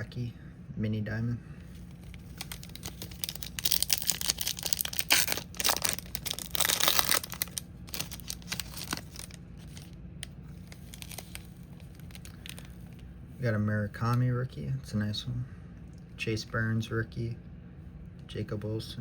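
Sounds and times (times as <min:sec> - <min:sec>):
card pack wrapper tearing and crinkling: 0:01.9 - 0:12.8.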